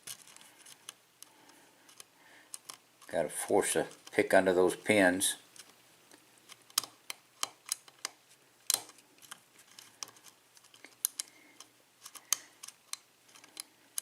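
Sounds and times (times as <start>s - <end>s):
lock pick clicking on pins: 6.6s - 8.1s.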